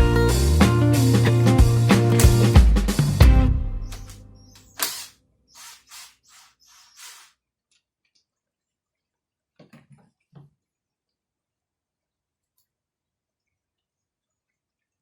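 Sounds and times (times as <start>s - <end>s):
background music: 0.0s - 4.6s
sharp click: 3.9s - 5.1s
short hissing bursts: 4.6s - 7.4s.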